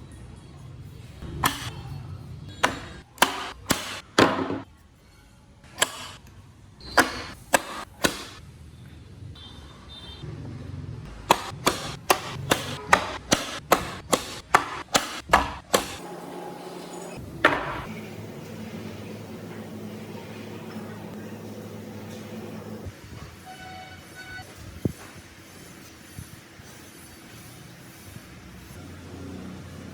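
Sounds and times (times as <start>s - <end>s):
tool knocking on wood: 11.3s - 16.0s, 17.4s - 17.9s.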